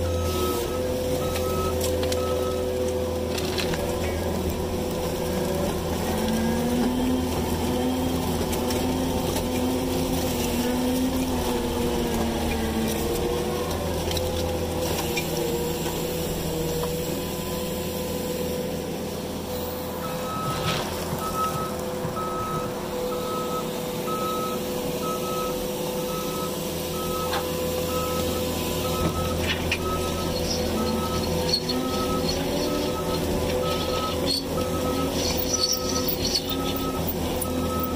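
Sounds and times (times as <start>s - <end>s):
diesel engine under load: 0.0s - 37.9s
backup alarm beeping: 20.0s - 37.9s.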